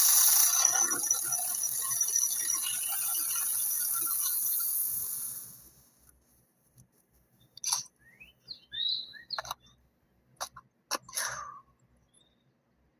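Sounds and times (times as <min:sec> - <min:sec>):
chainsaw motor winding down: 0:00.0 - 0:05.5
bird chirping: 0:07.4 - 0:09.8, 0:11.8 - 0:12.6.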